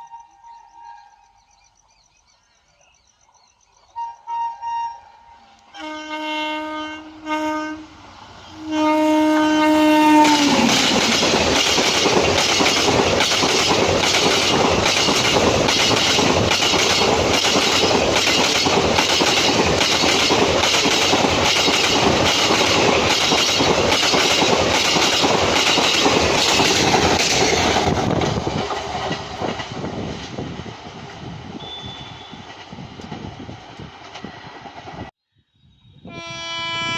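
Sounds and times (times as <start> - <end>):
locomotive horn blasts: 4.0 - 11.0, 31.6 - 32.5, 36.0 - 36.9
train wheels clickety-clack: 10.1 - 35.1.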